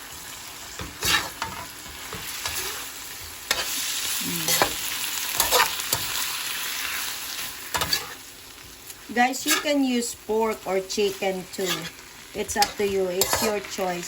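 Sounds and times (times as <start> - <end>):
shrimp sizzling in a pan: 0.0 - 14.0
utensil scraping a pan: 0.8 - 2.9, 3.5 - 3.8, 5.4 - 6.1, 7.7 - 8.2, 9.2 - 13.8.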